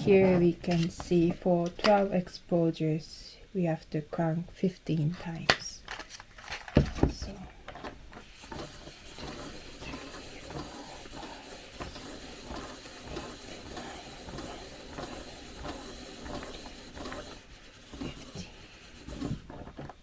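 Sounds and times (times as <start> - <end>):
film loader crank ratcheting: 11.8 - 18.5.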